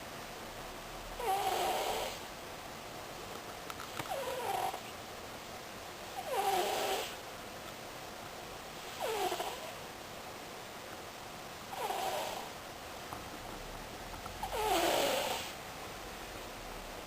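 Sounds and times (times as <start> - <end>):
cat snoring: 1.2 - 2.3, 4.1 - 4.9, 6.2 - 7.2, 8.8 - 9.8, 11.7 - 12.6, 14.4 - 15.6.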